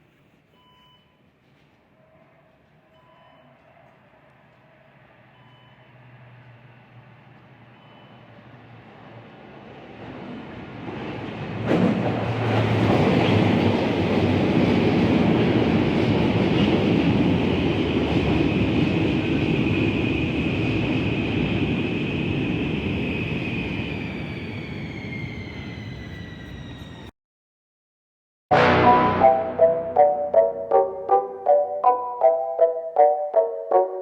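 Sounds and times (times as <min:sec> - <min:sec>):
rumble of wheels on rails: 0:04.3 - 0:27.1.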